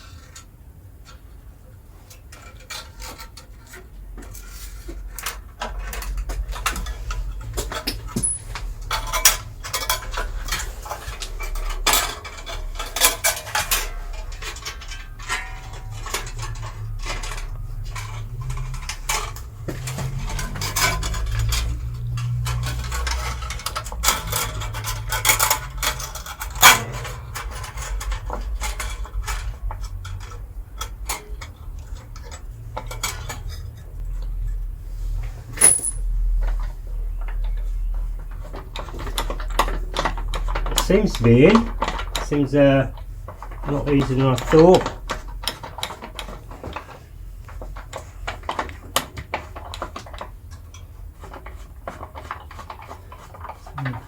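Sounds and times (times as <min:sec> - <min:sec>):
bandsaw blade clinking and rattling: 0:35.6 - 0:36.1.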